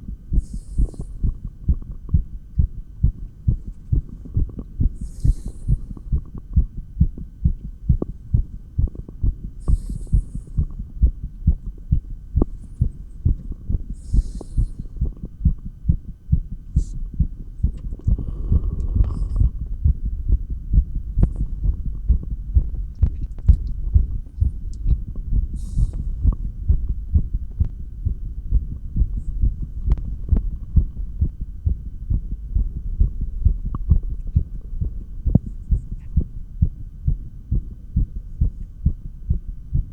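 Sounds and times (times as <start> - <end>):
heartbeat through stethoscope: 0.0 - 39.9
low hum: 0.0 - 39.9.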